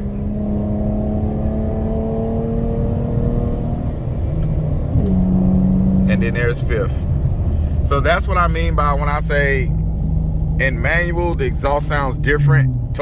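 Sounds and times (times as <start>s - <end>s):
car engine accelerating: 0.0s - 13.0s
transmission shifting up: 0.0s - 13.0s.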